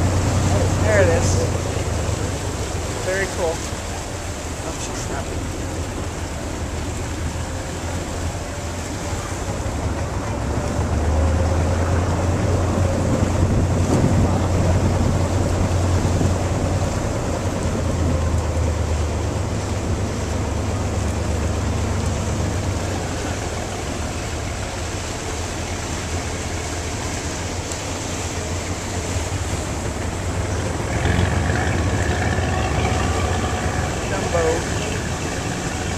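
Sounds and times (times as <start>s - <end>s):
motorboat engine running: 0.0s - 35.9s
water wash: 0.0s - 35.9s
wind buffeting microphone: 3.8s - 26.2s.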